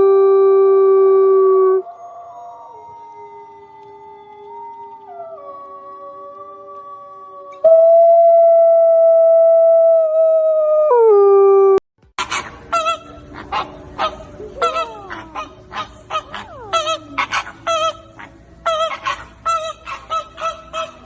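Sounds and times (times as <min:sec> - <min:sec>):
wolf howling: 0:01.7 - 0:09.4, 0:14.6 - 0:21.0
flamingos honking: 0:12.2 - 0:21.0.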